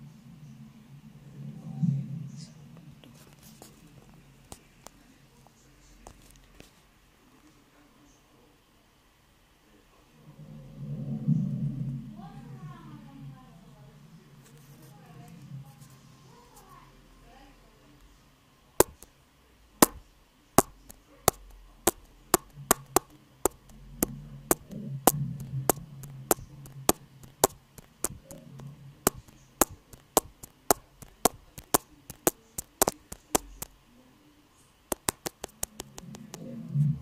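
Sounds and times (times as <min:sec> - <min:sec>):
computer keyboard keys clicking: 0:20.6 - 0:23.7, 0:29.1 - 0:33.7, 0:34.9 - 0:36.3.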